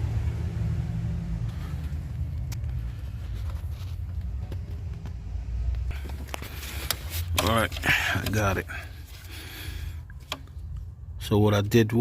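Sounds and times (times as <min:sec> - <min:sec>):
low rumble: 0:00.0 - 0:06.0.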